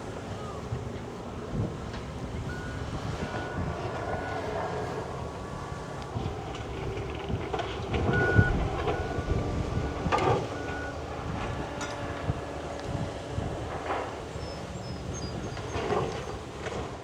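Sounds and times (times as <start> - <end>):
wind on microphone: 0.0 - 16.4
low engine rumble: 0.0 - 17.0
backup alarm beeping: 2.4 - 4.8, 8.2 - 11.1.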